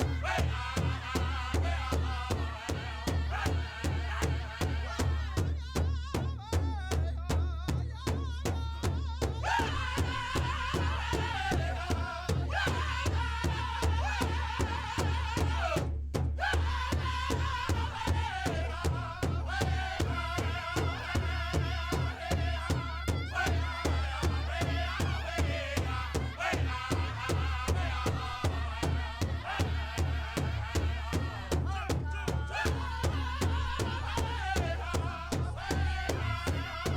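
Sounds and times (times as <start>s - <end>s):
quick steady drumbeat: 0.0s - 36.9s.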